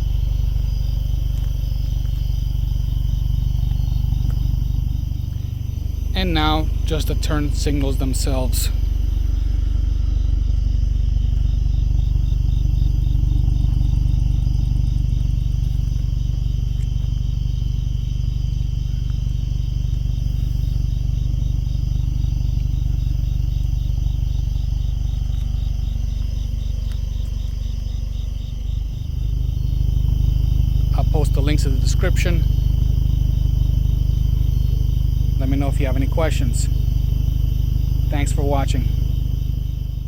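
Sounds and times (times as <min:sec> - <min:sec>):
crickets chirping: 0:00.0 - 0:40.0
steady low rumble: 0:00.0 - 0:40.0.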